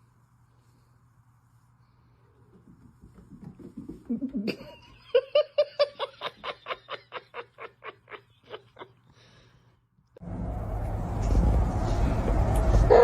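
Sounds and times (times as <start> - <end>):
person laughing: 4.1 - 9.1.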